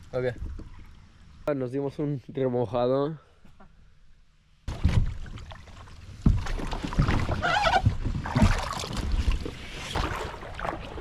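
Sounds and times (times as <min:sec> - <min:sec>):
paddle splashes: 0:04.7 - 0:11.0
river water flowing: 0:10.0 - 0:11.0.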